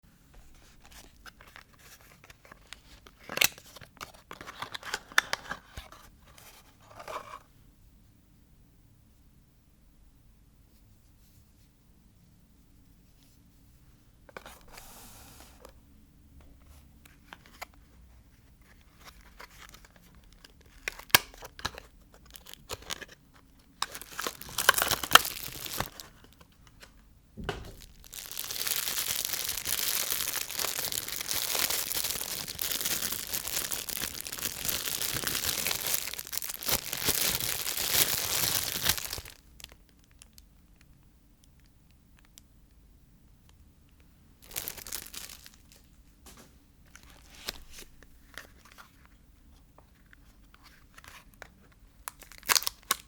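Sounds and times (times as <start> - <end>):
wrapper tearing and crinkling: 18.7 - 23.2, 23.8 - 26.5, 27.7 - 40.4, 44.4 - 45.9, 47.0 - 48.8, 52.0 - 53.0
packaging tapping: 23.8 - 26.1, 27.4 - 39.4.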